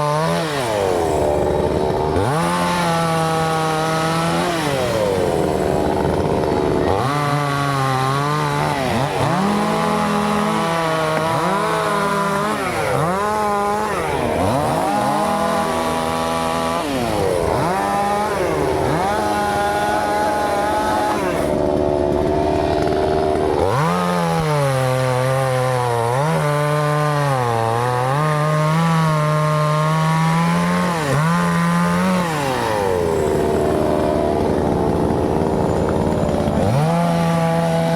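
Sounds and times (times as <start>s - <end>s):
chainsaw cutting wood: 0.0s - 37.9s.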